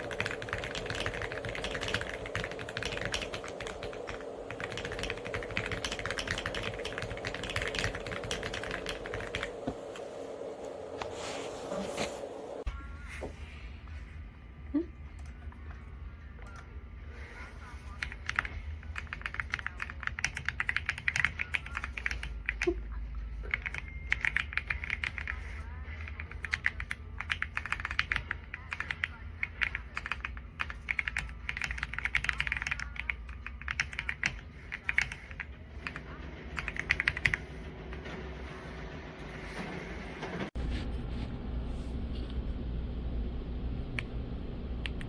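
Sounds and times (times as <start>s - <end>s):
mechanical keyboard clacking: 0.0s - 9.6s, 18.0s - 22.6s, 23.5s - 25.3s, 26.4s - 37.4s.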